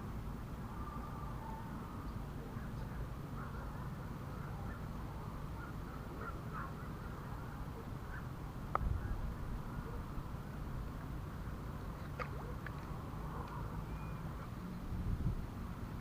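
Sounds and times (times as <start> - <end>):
faint bird calls: 0.6 - 10.1.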